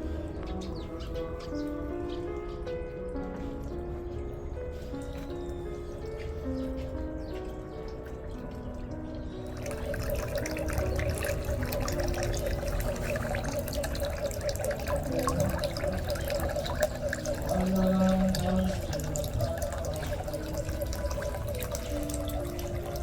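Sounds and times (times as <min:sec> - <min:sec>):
water running and splashing: 0:04.8 - 0:23.0.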